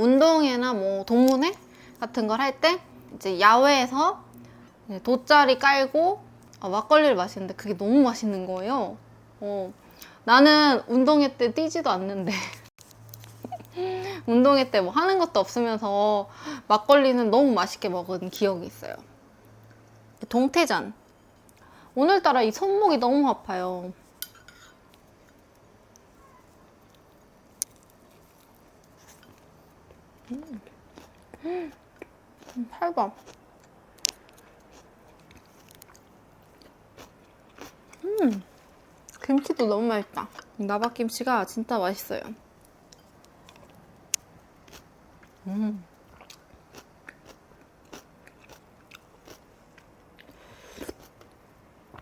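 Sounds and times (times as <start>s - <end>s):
quiet eating sounds: 12.3s - 14.8s, 21.0s - 52.0s
person chewing food: 24.9s - 32.6s, 33.2s - 39.2s, 42.6s - 45.4s, 46.0s - 51.4s.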